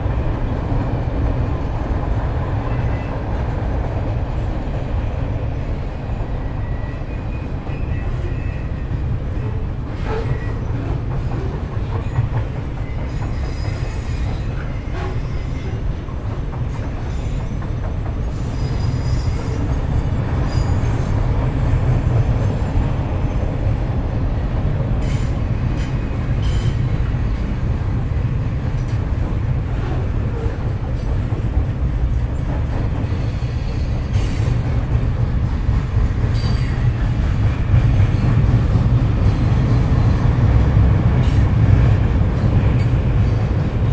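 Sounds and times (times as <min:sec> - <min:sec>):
freight train rumbling: 0:00.0 - 0:43.9
train wheel squeals: 0:02.6 - 0:03.3, 0:06.1 - 0:22.7, 0:25.0 - 0:27.0, 0:32.3 - 0:34.8, 0:36.3 - 0:38.5, 0:39.2 - 0:40.3, 0:41.2 - 0:41.6.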